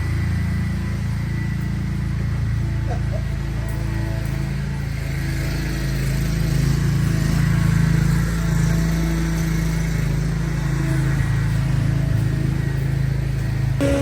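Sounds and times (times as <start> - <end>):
leaf blower engine running: 13.8 - 14.0.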